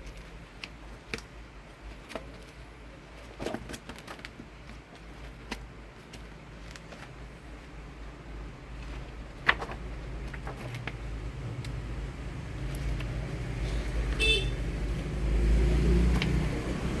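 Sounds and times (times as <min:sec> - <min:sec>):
passing vehicle rumble: 0:09.3 - 0:17.0.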